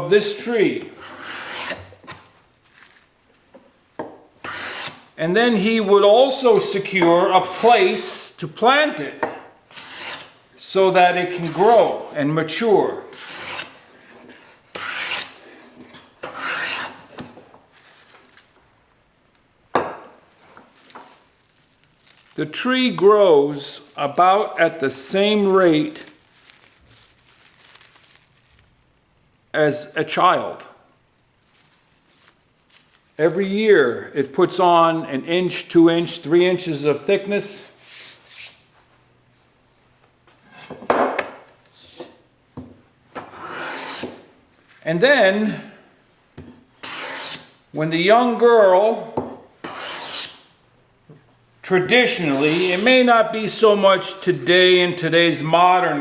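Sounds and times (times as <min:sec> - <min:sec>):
hand plane rasping on wood: 0:01.0 - 0:01.9, 0:04.4 - 0:05.0, 0:09.7 - 0:10.3, 0:13.2 - 0:17.0, 0:43.3 - 0:44.1, 0:46.8 - 0:47.4, 0:49.6 - 0:50.3.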